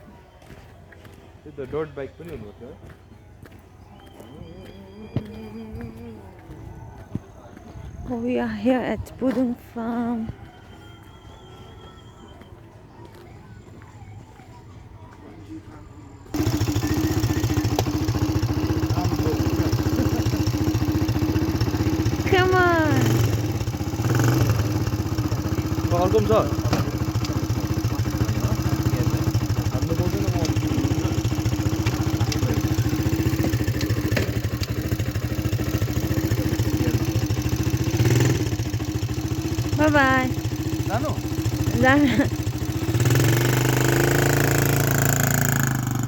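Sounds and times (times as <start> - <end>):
atv engine idling: 16.3 - 46.0.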